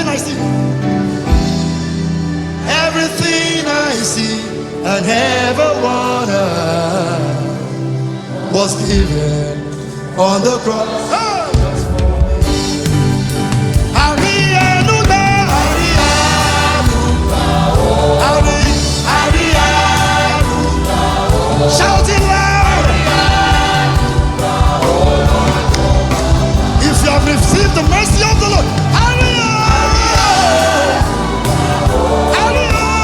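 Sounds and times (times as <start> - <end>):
many voices singing together: 1.5 - 33.0
band with bass and beat: 11.6 - 33.0.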